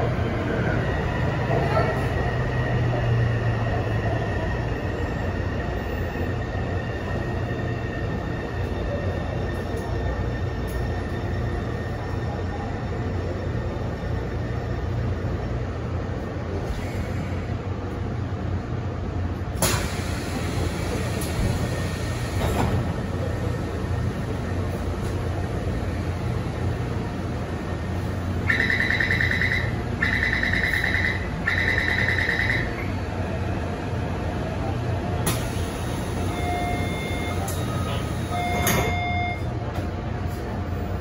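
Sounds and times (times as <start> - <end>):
train car humming: 0.0 - 41.0
door-closing warning tone: 35.4 - 39.5.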